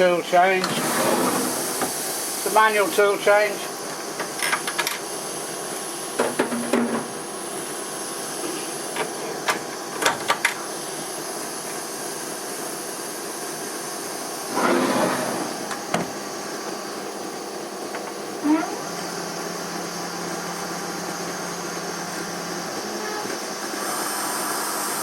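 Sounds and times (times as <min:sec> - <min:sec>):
steady hiss: 0:00.8 - 0:03.6
scraping rattle: 0:14.5 - 0:15.8.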